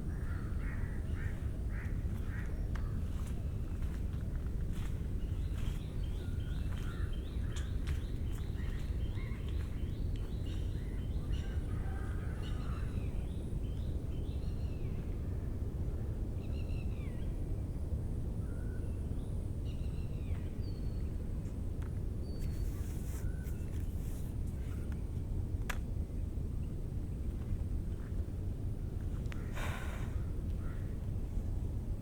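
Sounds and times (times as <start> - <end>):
steady low rumble: 0.0 - 20.3.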